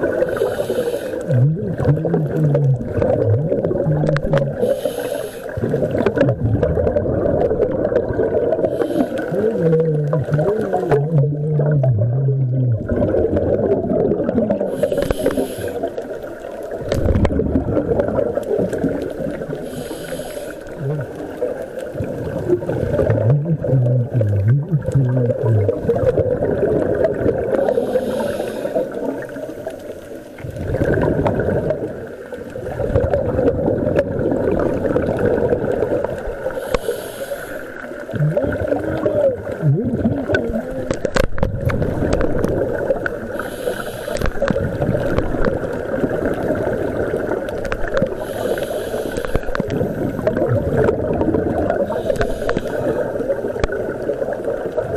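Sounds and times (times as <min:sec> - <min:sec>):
exhaled bubbles gurgling underwater: 0:00.0 - 0:54.9
regulator hiss: 0:00.2 - 0:01.3, 0:04.6 - 0:05.6, 0:14.7 - 0:16.1, 0:19.6 - 0:20.8, 0:27.6 - 0:29.0, 0:36.5 - 0:37.9, 0:43.4 - 0:44.3, 0:48.1 - 0:49.6, 0:51.9 - 0:53.0.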